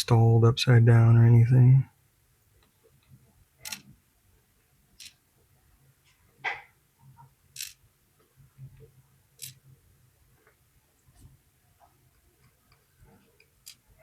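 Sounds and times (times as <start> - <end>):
low steady hum: 0.0 - 6.1
small lock pins clicking: 3.6 - 3.9, 5.0 - 5.2, 7.6 - 7.8, 9.4 - 9.6, 13.4 - 13.8.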